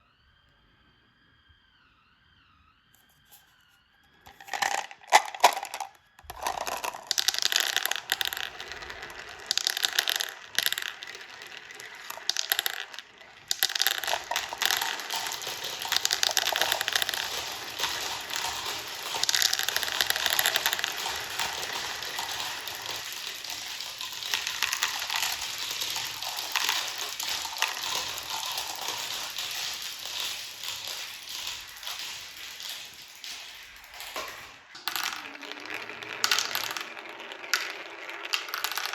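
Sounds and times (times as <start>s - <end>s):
marbles rattling down a marble run: 4.2s - 38.9s.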